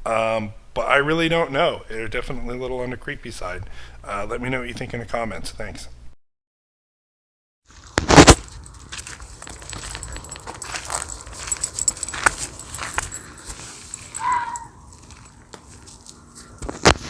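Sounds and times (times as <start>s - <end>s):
handling clicks and rustling: 7.9s - 17.0s
faint animal call: 14.2s - 14.8s.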